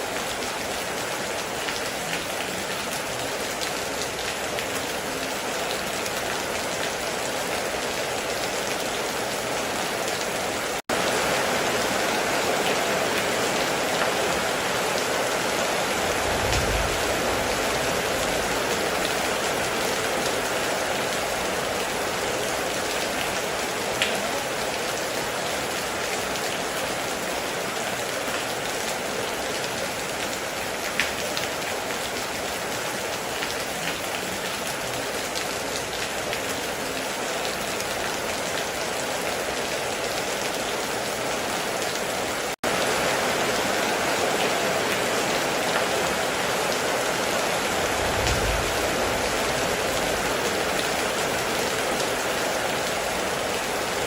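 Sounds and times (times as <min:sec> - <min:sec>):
rain on a metal roof: 0:00.0 - 0:54.0
low rumble: 0:16.0 - 0:18.5, 0:47.8 - 0:50.4.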